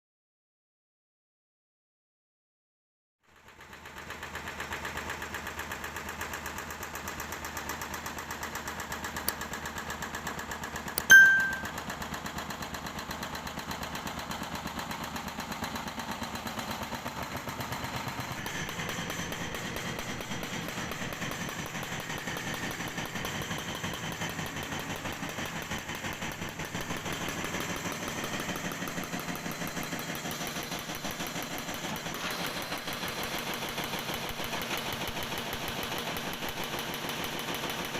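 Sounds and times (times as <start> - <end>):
sharp metal clang: 11.0 - 11.8
jackhammer hammering ground: 13.9 - 37.9.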